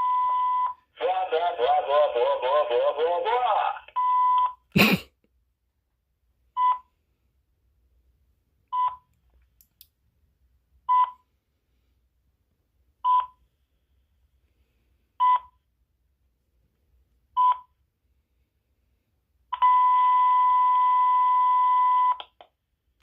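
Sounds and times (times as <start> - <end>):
cordless phone beeps: 0.0 - 0.8, 4.0 - 4.6, 6.6 - 6.9, 8.7 - 9.1, 10.9 - 11.2, 13.0 - 13.4, 15.2 - 15.6, 17.4 - 17.7, 19.5 - 22.4.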